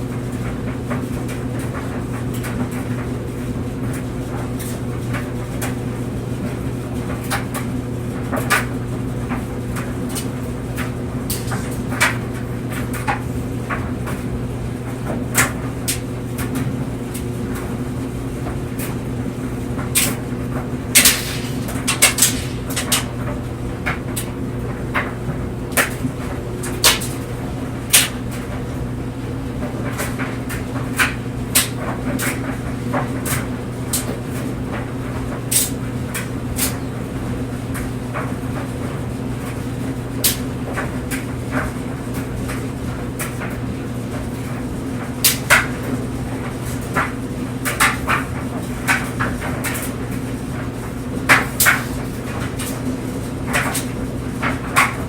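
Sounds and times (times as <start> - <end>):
clothes dryer humming: 0.0 - 55.0
clicks and knocks of tumbling load: 18.4 - 28.8.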